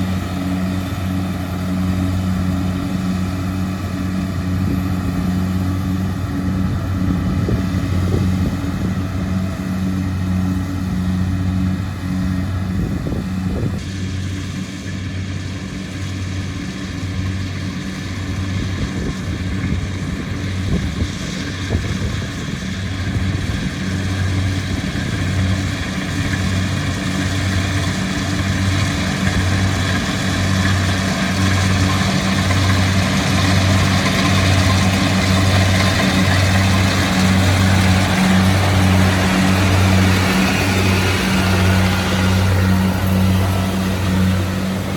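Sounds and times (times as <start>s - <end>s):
diesel engine droning: 0.0s - 44.9s
machinery hissing: 28.1s - 44.9s.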